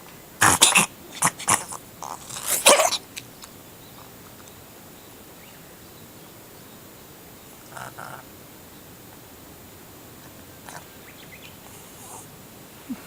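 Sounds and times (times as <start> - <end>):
cat sneezing: 0.4 - 3.0.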